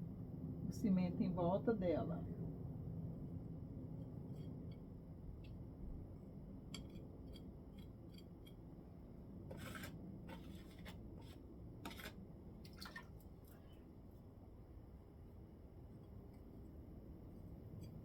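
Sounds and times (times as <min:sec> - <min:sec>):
mortar scraping strokes: 0:09.5 - 0:12.2.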